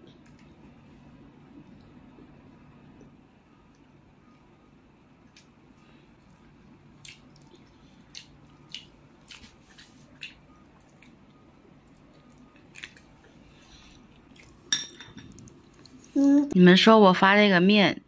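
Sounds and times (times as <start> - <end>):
wet chewing and mouth clicks: 6.2 - 16.2
tableware clink: 14.7 - 15.4.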